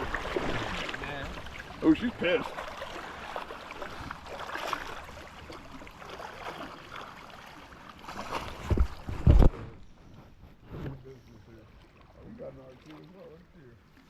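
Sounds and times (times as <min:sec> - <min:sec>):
creek water rushing: 0:00.0 - 0:09.4.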